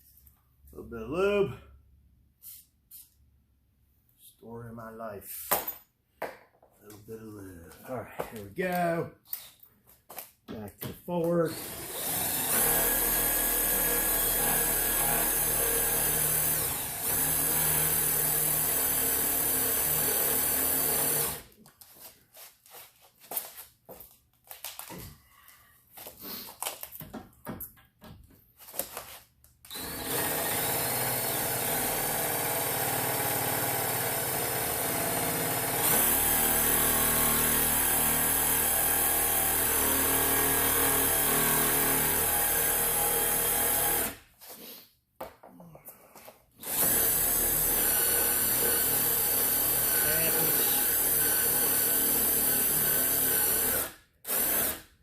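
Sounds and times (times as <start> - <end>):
power drill running: 11.5 - 21.5, 29.7 - 44.2, 46.6 - 54.8.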